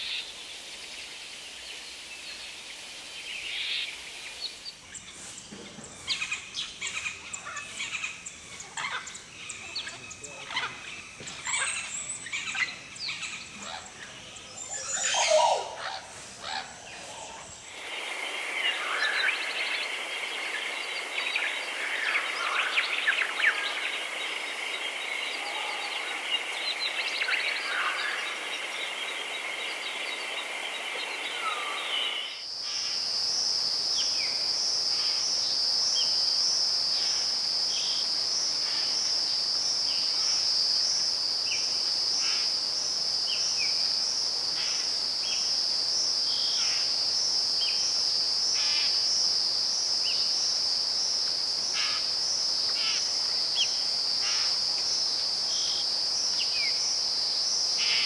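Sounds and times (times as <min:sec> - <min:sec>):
wild birds calling: 0:13.6 - 0:32.4
shrill insect trill: 0:14.6 - 0:32.5.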